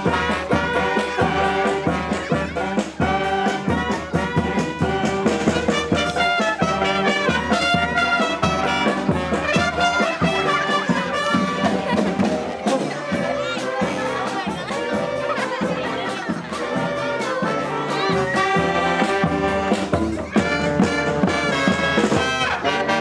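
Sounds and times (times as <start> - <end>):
brass band playing: 0.0 - 23.0.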